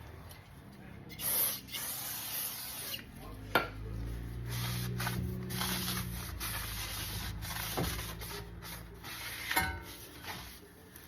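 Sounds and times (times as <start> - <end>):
rag rubbing metal: 4.0 - 10.6.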